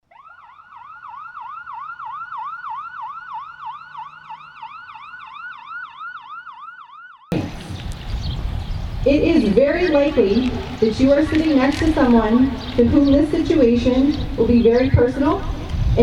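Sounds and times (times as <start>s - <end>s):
siren yelping: 0.0s - 7.4s.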